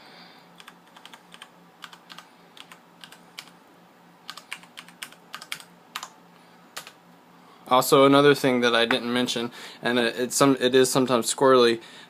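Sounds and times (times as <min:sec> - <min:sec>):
typing on computer keyboard: 0:00.6 - 0:03.5, 0:04.3 - 0:06.1, 0:06.8 - 0:07.0.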